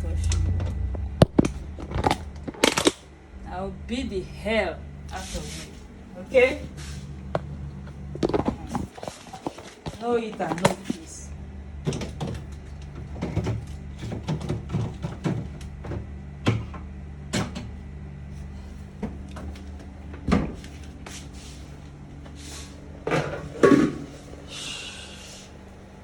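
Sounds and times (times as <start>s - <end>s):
objects knocking and clattering: 23.0s - 24.1s.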